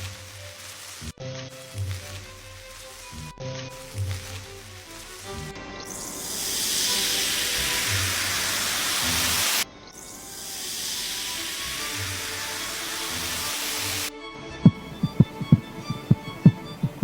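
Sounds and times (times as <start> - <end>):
loud hissing noise: 0.0 - 14.1
background music with pulsing beat: 14.6 - 17.0.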